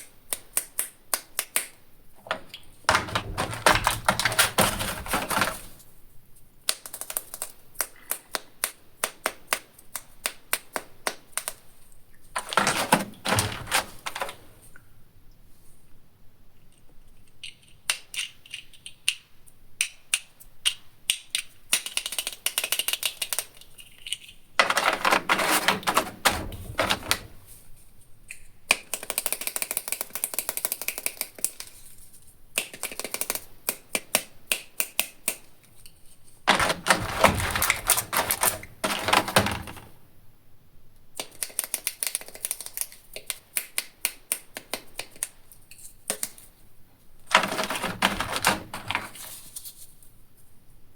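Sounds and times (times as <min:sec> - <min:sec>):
packaging crinkling or tearing: 0:02.9 - 0:05.8, 0:23.8 - 0:27.3, 0:36.5 - 0:39.9, 0:47.3 - 0:49.9.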